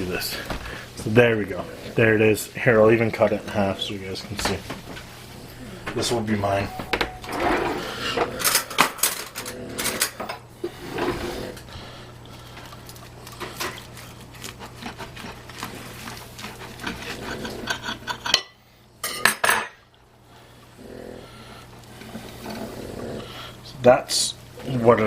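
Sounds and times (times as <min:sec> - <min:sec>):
knife scraping a plate: 0:13.4 - 0:18.6.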